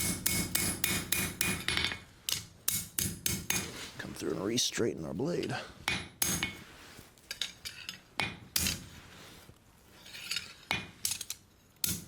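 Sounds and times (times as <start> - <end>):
hammer striking knife on anvil: 0.0 - 3.7, 5.9 - 6.6, 10.7 - 12.0.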